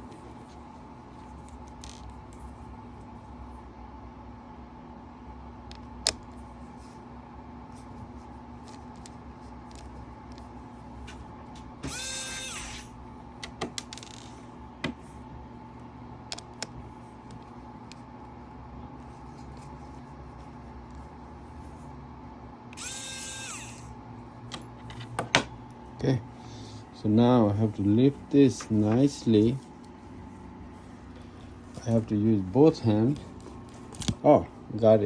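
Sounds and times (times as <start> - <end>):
steady low hum: 0.0 - 35.0
electric screwdriver whirring: 11.8 - 12.9, 22.8 - 23.9.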